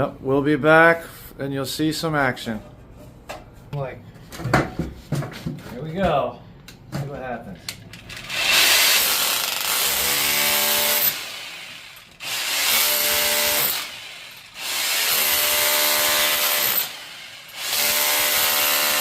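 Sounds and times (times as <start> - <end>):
handheld power tool motor: 8.0 - 19.0.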